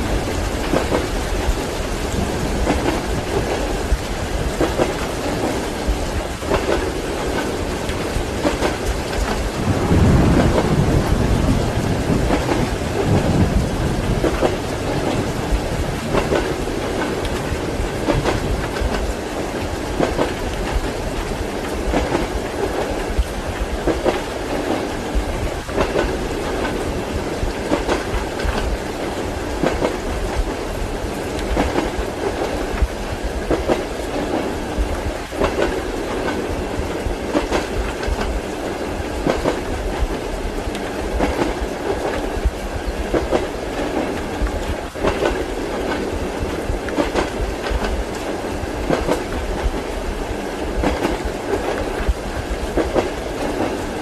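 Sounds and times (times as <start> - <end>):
train rumble: 0.0 - 54.0.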